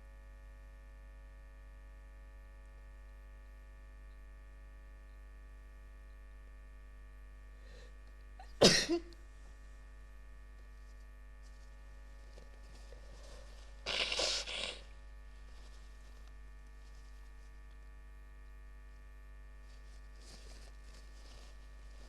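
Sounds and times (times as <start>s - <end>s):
steady electrical hum: 0.0s - 22.0s
person sneezing: 8.6s - 9.1s, 13.8s - 14.9s.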